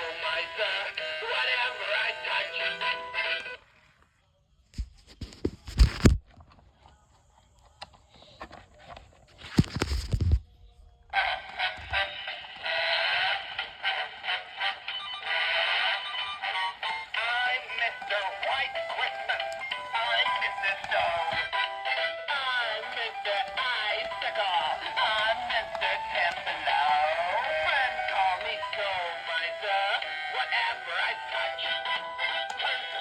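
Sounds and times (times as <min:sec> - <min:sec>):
toy playing song with singing: 0:00.0 - 0:03.6, 0:11.2 - 0:33.0.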